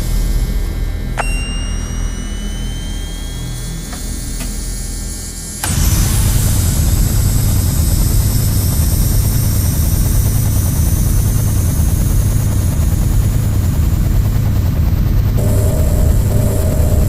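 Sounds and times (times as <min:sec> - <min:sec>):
spaceship low rumble: 0:00.0 - 0:17.0
thin high whine rising: 0:01.2 - 0:08.8, 0:15.4 - 0:17.0.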